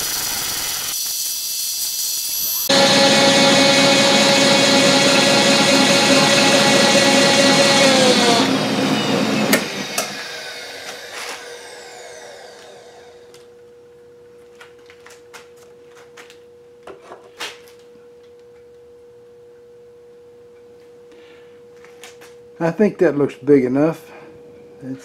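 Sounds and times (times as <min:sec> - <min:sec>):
milling spindle whine: 0:02.2 - 0:13.5.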